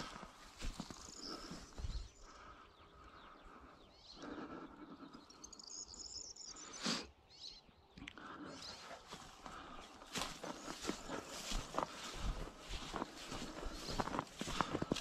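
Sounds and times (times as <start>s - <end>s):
footsteps through vegetation: 0.0s - 1.9s, 8.6s - 15.0s
bird chirping: 0.0s - 15.0s.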